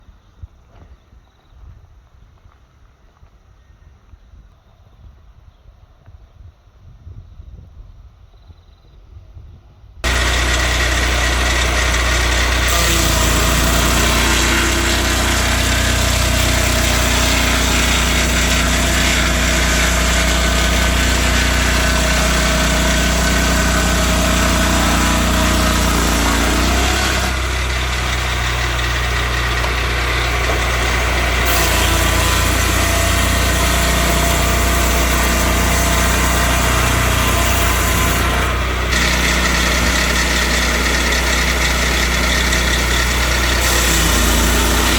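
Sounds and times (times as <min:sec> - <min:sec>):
circular sawmill engine running: 0:10.0 - 0:44.9.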